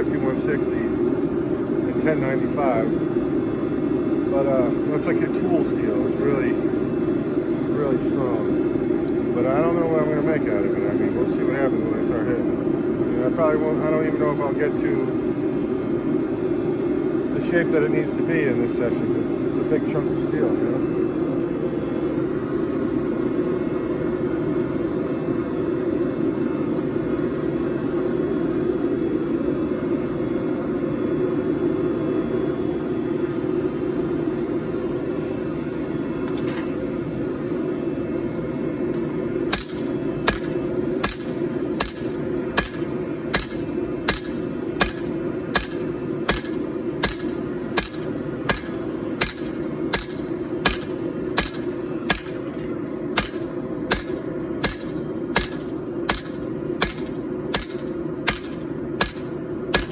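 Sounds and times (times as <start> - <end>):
hammer striking steel on anvil: 39.5 - 59.9.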